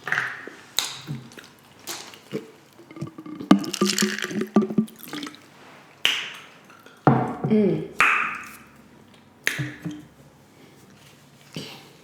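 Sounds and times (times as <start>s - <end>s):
wet chewing and mouth smacks: 0.0s - 7.0s.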